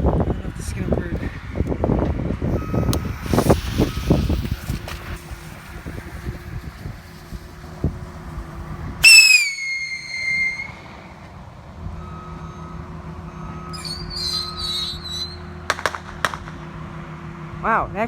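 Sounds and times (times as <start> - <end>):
whistling firework rockets: 2.5 - 11.4, 13.6 - 16.6
firework cracks: 2.9 - 8.3, 9.0 - 11.1, 15.1 - 16.7.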